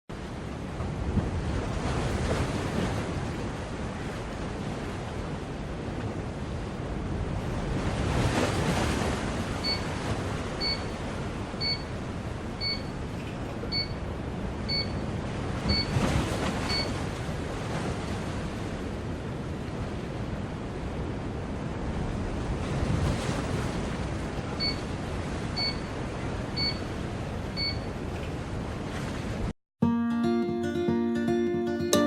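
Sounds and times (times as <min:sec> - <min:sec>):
alarm clock beeping: 0:14.7 - 0:15.0, 0:15.7 - 0:16.0.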